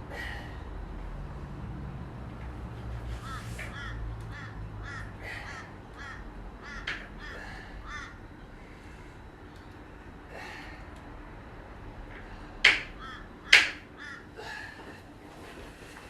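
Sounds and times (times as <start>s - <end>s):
steady low rumble: 0.0s - 16.0s
crow-like bird calling: 3.1s - 8.9s, 12.2s - 14.9s.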